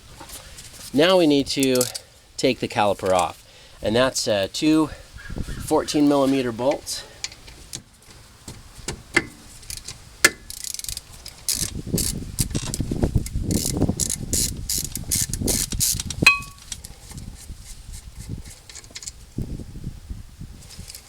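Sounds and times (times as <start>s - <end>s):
ratchet wrench clicking: 1.6s - 2.0s, 9.6s - 16.6s
metallic clink: 16.2s - 16.6s.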